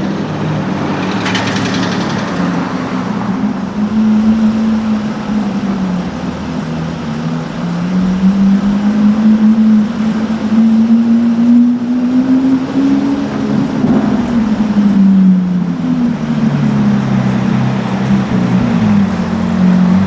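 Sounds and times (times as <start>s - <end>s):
car engine running: 0.0s - 20.0s.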